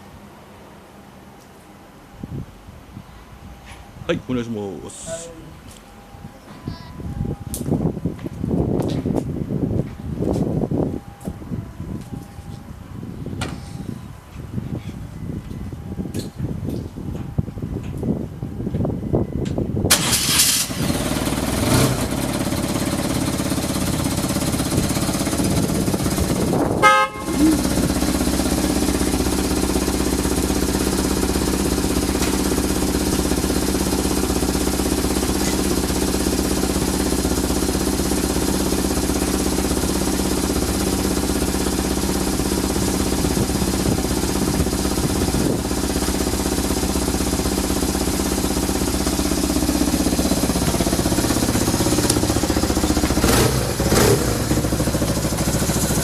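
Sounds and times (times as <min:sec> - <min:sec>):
motorcycle engine starting and idling: 0:19.4 - 0:56.0.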